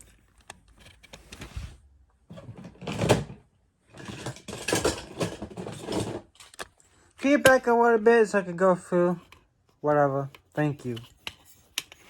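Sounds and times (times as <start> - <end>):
toy cars clattering: 4.0 - 7.7.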